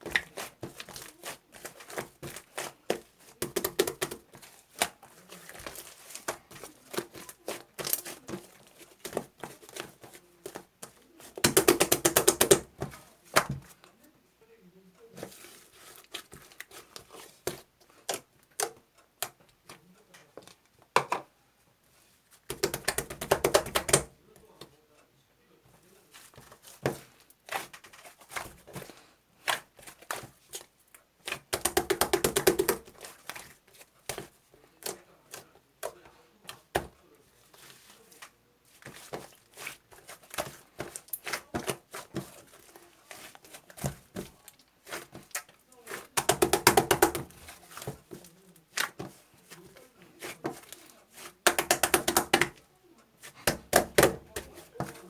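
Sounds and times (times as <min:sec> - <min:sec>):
small objects clicking and tapping: 0:00.0 - 0:04.9, 0:11.3 - 0:13.6, 0:22.5 - 0:24.1, 0:31.4 - 0:33.3, 0:46.2 - 0:49.2, 0:51.4 - 0:52.6.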